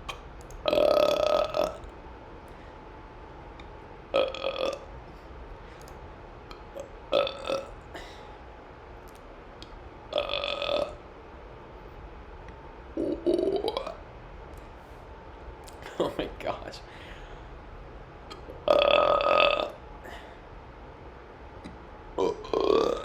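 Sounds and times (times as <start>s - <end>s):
person burping: 0.6s - 1.9s, 4.2s - 4.9s, 6.7s - 8.2s, 10.1s - 11.0s, 13.0s - 14.0s, 18.3s - 20.2s, 22.2s - 23.0s.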